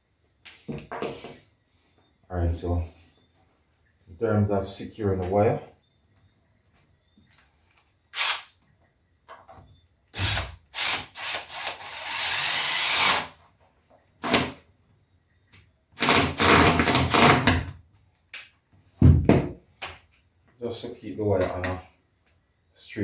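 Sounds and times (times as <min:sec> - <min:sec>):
power drill running: 0:08.1 - 0:08.5, 0:10.2 - 0:13.3, 0:16.0 - 0:17.4.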